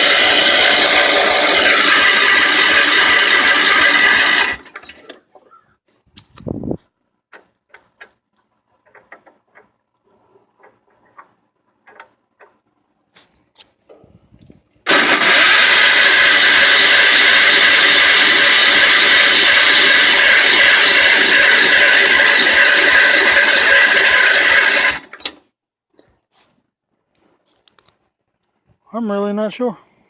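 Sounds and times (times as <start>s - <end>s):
small engine cranking: 0.0s - 5.2s, 14.9s - 25.4s.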